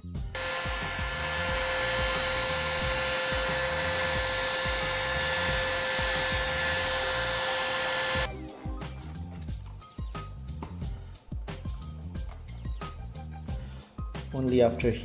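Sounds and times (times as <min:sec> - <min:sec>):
hot-air blower whining: 0:00.4 - 0:08.3.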